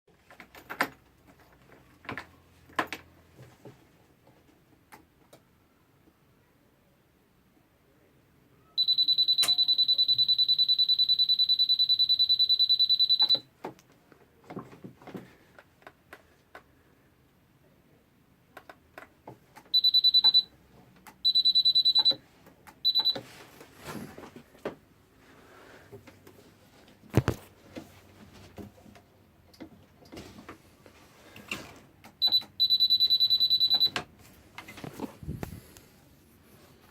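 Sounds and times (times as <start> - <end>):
scooter warning buzzer beeping: 8.8 - 13.5, 19.7 - 20.5, 21.2 - 22.2, 22.8 - 23.2, 32.2 - 34.0.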